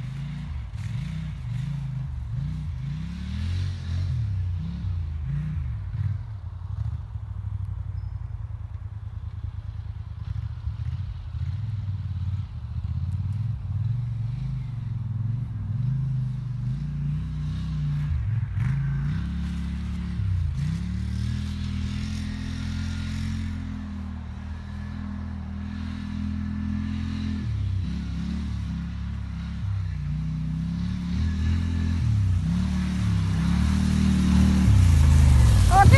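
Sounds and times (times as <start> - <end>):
quad engine revving: 25.6 - 35.9.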